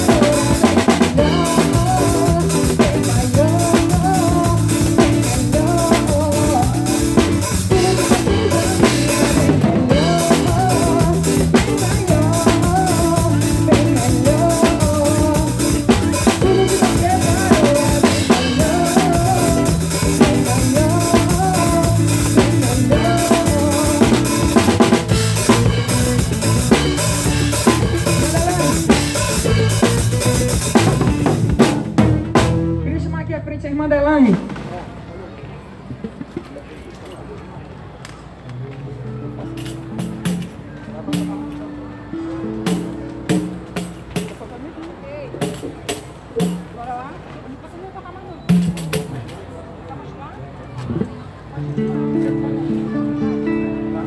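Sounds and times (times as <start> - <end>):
live band music: 0.0 - 33.2, 39.2 - 46.9, 48.5 - 49.4.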